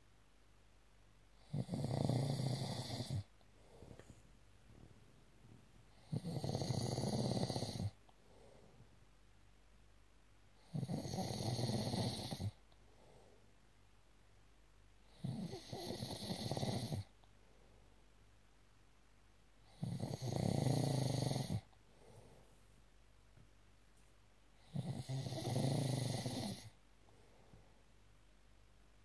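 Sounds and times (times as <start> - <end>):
quiet breathing: 1.2 - 9.2, 10.5 - 13.8, 15.0 - 18.4, 19.5 - 23.0, 23.9 - 28.2
loud snoring: 1.4 - 3.3, 5.9 - 8.0, 10.6 - 12.6, 15.1 - 17.1, 19.7 - 21.7, 24.6 - 26.8.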